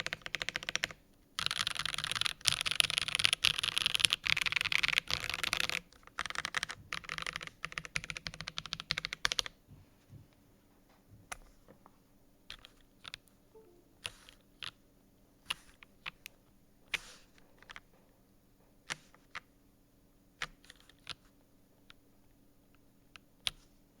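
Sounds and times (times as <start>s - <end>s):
mechanical keyboard typing: 0.0s - 9.5s, 12.5s - 13.2s.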